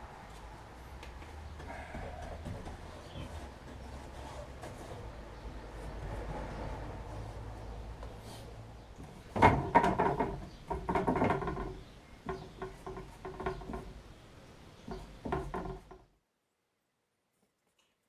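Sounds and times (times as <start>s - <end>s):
sharp knocks and clatters: 9.0s - 14.0s, 14.8s - 16.1s.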